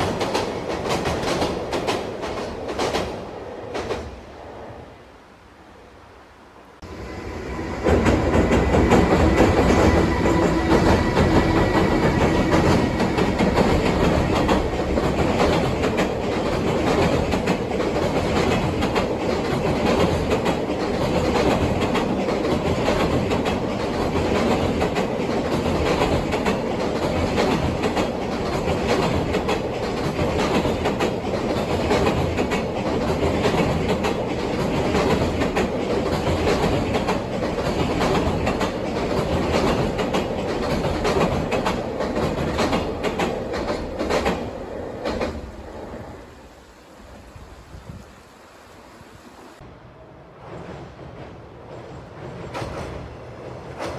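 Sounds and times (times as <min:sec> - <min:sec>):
train wheels clicking over rail joints: 0:00.0 - 0:04.2, 0:06.8 - 0:46.3, 0:50.5 - 0:53.9.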